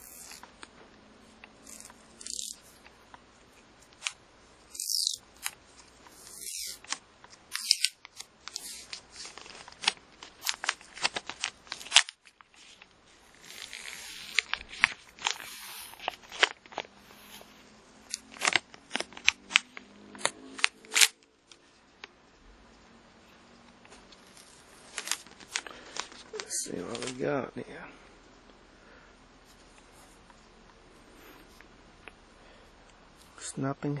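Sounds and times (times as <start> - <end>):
plastic film tearing: 0.0 - 0.7, 1.6 - 2.6, 3.9 - 17.4, 18.1 - 21.2, 24.3 - 27.2
plastic film clicking and crackling: 4.8 - 16.9, 18.1 - 21.6, 24.8 - 27.2.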